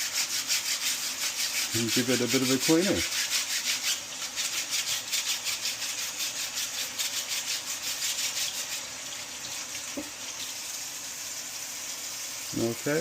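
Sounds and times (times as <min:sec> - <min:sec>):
brush scrubbing filter: 0:00.0 - 0:09.1
tap water running: 0:00.0 - 0:13.0.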